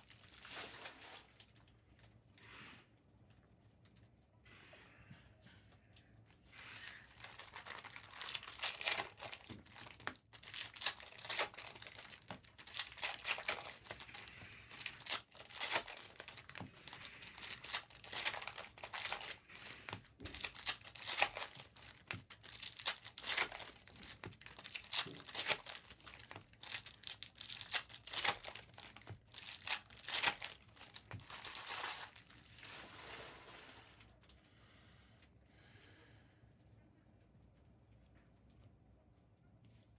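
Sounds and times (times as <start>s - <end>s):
plastic wrapping crinkling: 0.0s - 2.4s, 6.5s - 34.4s.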